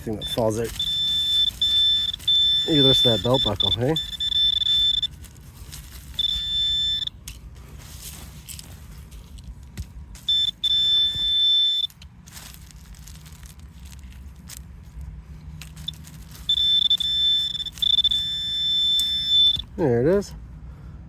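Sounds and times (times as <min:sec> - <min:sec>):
metal detector high-pitched tone: 0:00.0 - 0:05.2, 0:06.0 - 0:07.2, 0:10.2 - 0:11.9, 0:15.8 - 0:19.8.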